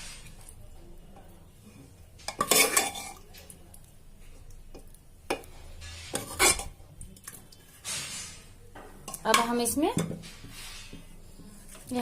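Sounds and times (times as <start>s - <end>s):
spoon scraping a cooking pot: 2.2s - 3.4s, 5.3s - 12.0s.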